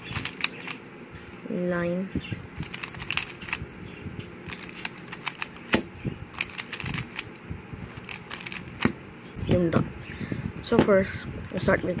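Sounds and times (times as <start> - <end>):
plastic puzzle cube clicking: 0.0 - 0.8, 2.6 - 3.6, 4.5 - 7.3, 8.0 - 8.9.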